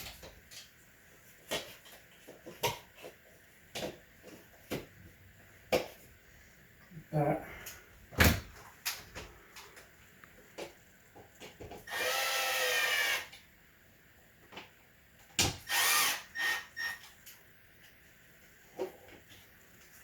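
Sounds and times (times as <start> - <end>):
power drill whirring: 11.9 - 13.4, 15.6 - 17.1.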